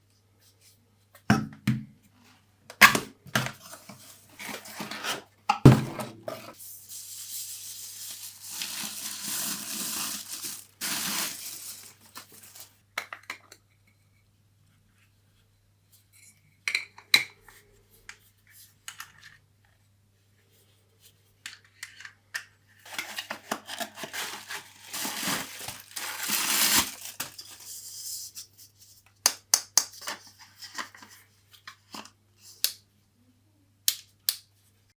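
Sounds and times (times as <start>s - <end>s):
wrapping rustling and tearing: 6.9s - 12.8s, 22.9s - 27.8s.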